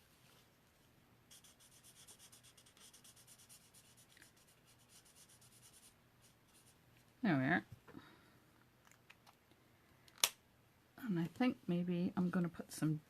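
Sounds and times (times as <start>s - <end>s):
marker rubbing on paper: 1.3s - 6.8s.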